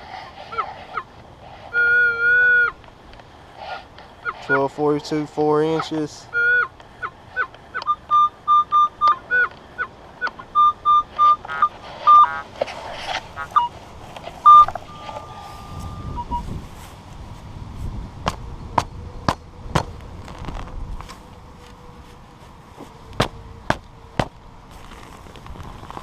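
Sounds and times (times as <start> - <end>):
metal detector beeps: 1.7 - 2.7, 4.2 - 4.8, 5.7 - 12.4, 13.4 - 13.8, 14.4 - 16.5
metal detector steady tone: 1.7 - 2.8, 4.2 - 16.6.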